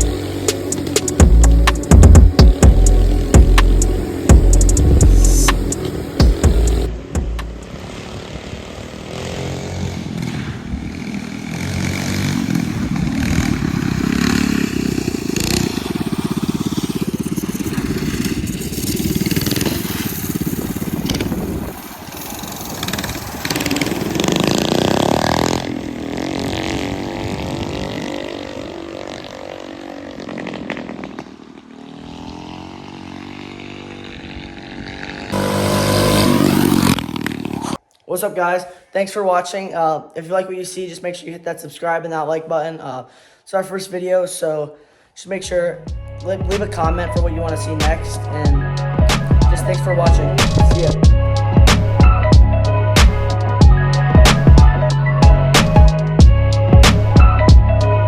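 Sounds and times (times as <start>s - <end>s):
go-kart engine running: 0.0s - 37.8s.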